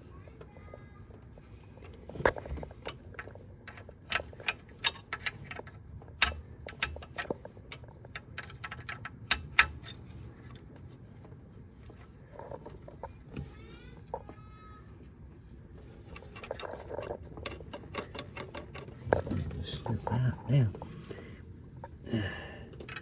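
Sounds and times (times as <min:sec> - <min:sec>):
wrench and nuts clinking: 0:02.3 - 0:10.2, 0:16.0 - 0:19.1, 0:22.7 - 0:23.0.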